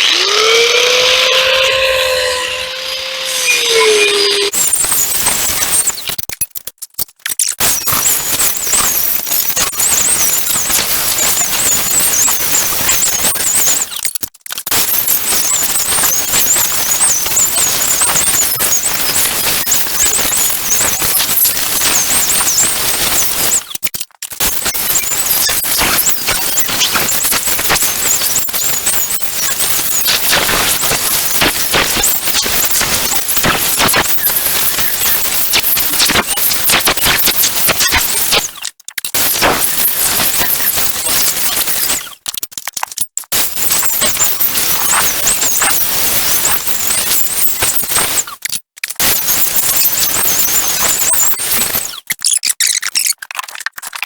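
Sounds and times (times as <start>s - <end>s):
angle grinder grinding steel: 0.0s - 5.0s.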